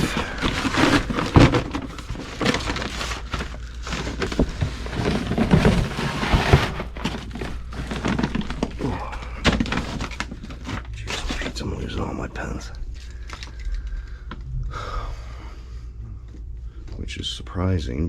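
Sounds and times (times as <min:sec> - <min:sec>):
rustling scrapes: 0:00.0 - 0:12.7
steady low hum: 0:00.0 - 0:18.0.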